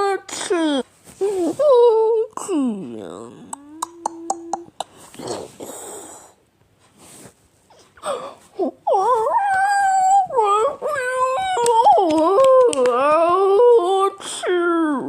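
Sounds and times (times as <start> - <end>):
high-pitched vocal wail: 8.9 - 15.0.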